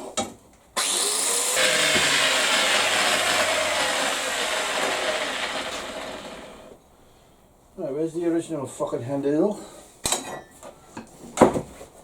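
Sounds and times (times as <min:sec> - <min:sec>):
power saw cutting metal: 0:00.8 - 0:06.8
saw motor running down: 0:00.8 - 0:06.8.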